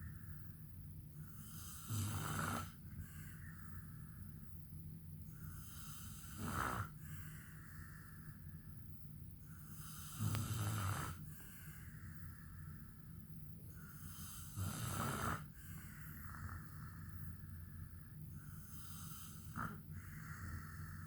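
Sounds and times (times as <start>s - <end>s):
quiet breathing: 0.0s - 21.0s
man snoring: 1.4s - 2.8s, 5.5s - 7.0s, 9.7s - 11.3s, 13.9s - 17.0s, 18.6s - 21.0s.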